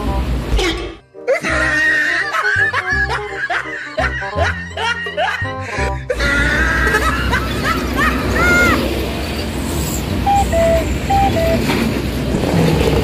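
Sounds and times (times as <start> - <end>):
heavy vehicle engine rumble: 5.8 - 13.0.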